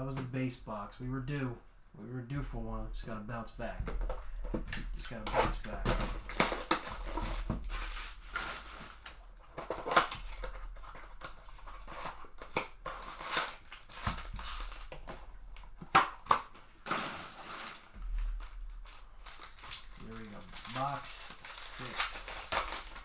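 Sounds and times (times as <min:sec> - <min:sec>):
plastic and cardboard crinkling: 0:02.4 - 0:23.0
packaging tearing: 0:05.4 - 0:23.0.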